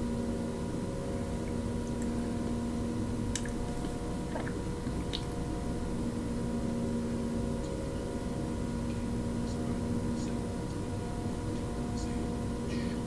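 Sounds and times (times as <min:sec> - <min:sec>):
electrical hum: 0:00.0 - 0:13.0
wet mouth eating sounds: 0:03.3 - 0:05.4.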